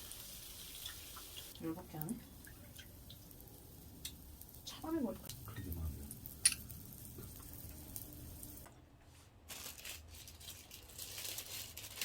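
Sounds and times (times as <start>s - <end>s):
crinkling and rustling with clicks: 9.4s - 12.0s.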